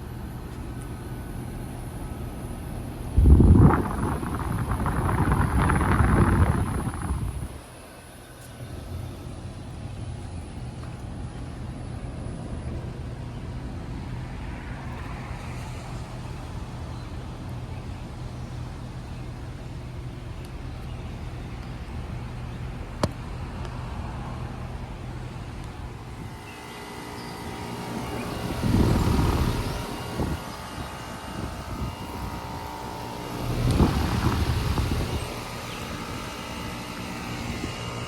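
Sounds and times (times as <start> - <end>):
heat pump humming: 0.0 - 14.3, 14.9 - 38.0
rushing noise: 2.7 - 8.2.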